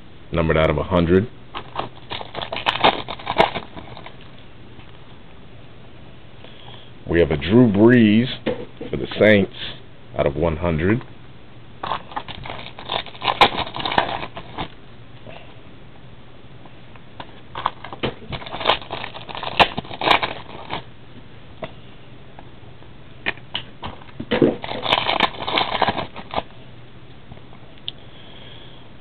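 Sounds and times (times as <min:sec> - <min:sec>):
wrapper crinkling and tearing: 0:01.5 - 0:04.2, 0:11.8 - 0:14.8, 0:17.5 - 0:20.9, 0:24.4 - 0:26.5.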